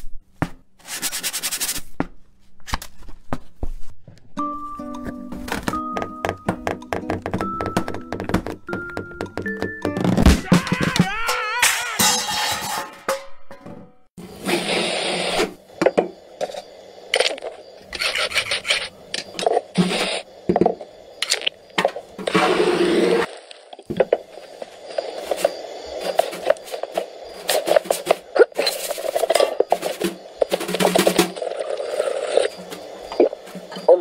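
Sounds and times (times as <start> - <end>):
cartoon knocks and clicks: 5.0 - 11.7.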